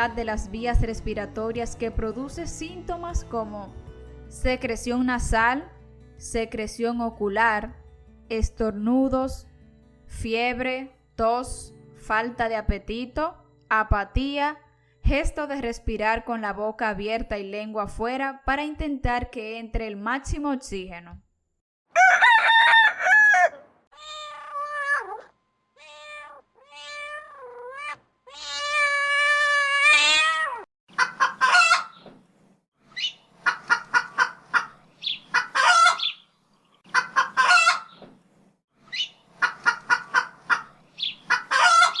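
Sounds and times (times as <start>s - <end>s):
cat meowing: 24.0s - 30.7s.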